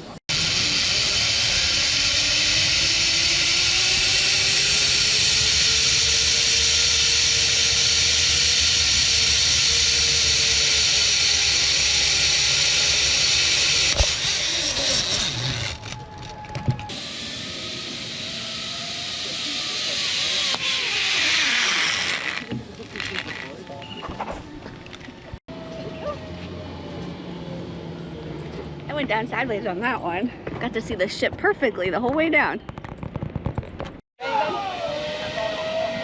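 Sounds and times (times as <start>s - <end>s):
whine rising and falling in pitch: 0.3s - 22.5s, 34.2s - 36.0s
zip line pulleys on cable: 0.3s - 23.6s, 34.2s - 36.0s.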